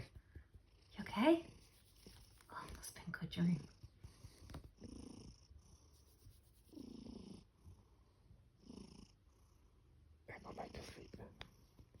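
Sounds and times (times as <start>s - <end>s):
cat snoring softly: 3.6s - 6.0s, 6.6s - 11.7s.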